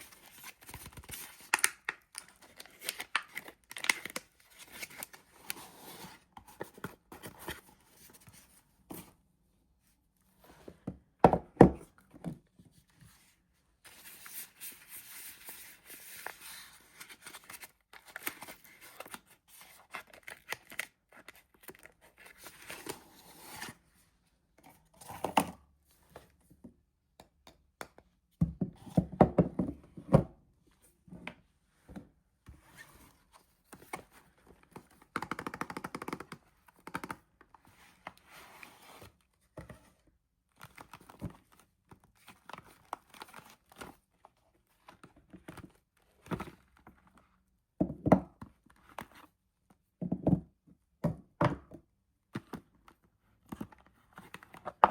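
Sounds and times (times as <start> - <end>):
packaging crinkling and tearing: 0.0 - 5.3.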